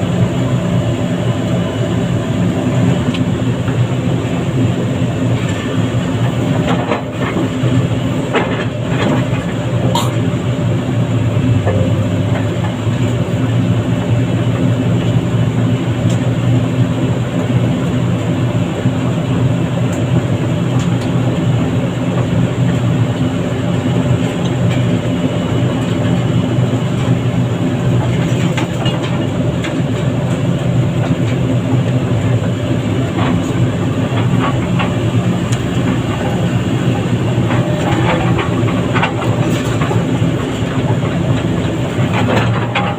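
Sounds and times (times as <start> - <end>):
heavy diesel engine running: 0.0 - 42.9
sharp clicks and knocks: 11.6 - 13.1.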